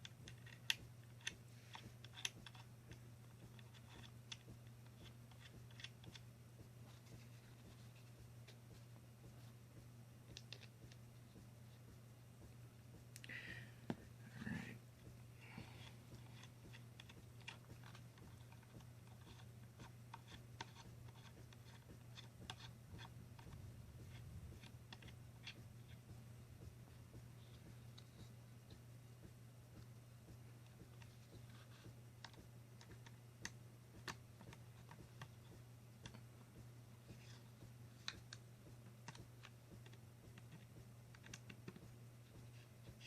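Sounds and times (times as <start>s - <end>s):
small screws and tool clicking: 0.0s - 6.2s
low steady hum: 0.0s - 43.0s.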